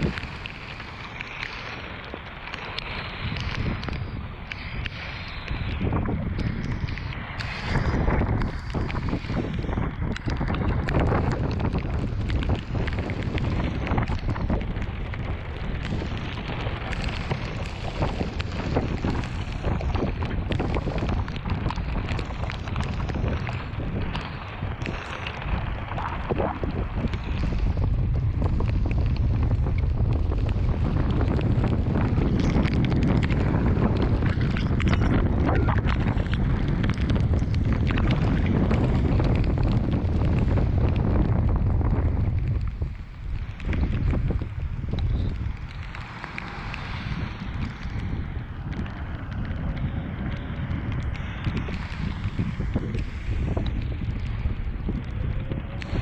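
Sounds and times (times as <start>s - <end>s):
wind buffeting microphone: 0.0s - 56.0s.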